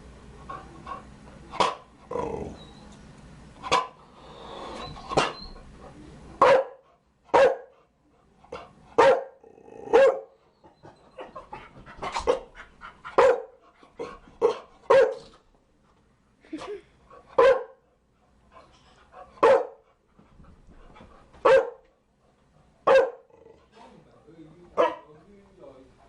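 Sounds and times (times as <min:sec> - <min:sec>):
dog barking: 0:01.6 - 0:01.9, 0:03.7 - 0:04.0, 0:06.4 - 0:07.7, 0:09.0 - 0:10.4, 0:12.2 - 0:12.5, 0:13.2 - 0:13.6, 0:14.4 - 0:15.3, 0:17.4 - 0:17.8, 0:19.4 - 0:19.8, 0:21.4 - 0:21.8, 0:22.8 - 0:23.3, 0:24.8 - 0:25.1.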